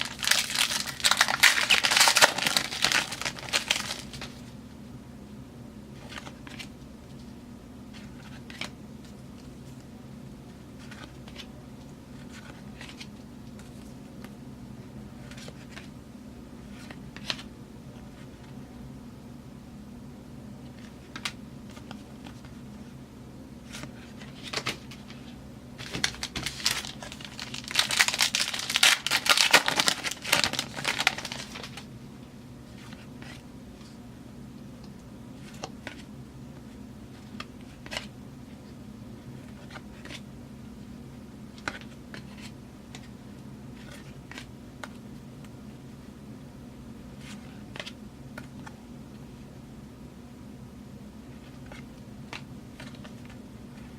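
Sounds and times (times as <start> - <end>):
foil wrapper crinkling and tearing: 0.0 - 4.3, 25.9 - 31.8
steady low hum: 0.0 - 53.9.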